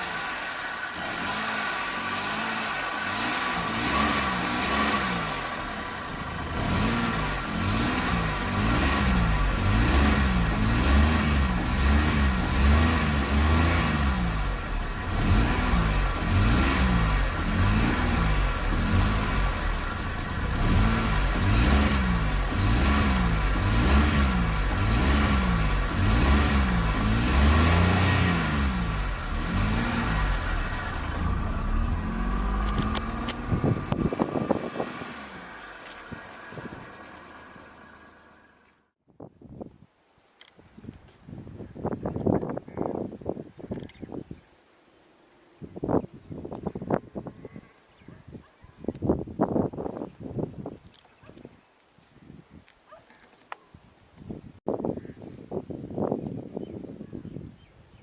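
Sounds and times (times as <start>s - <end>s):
car engine revving in blips: 0.0s - 38.8s.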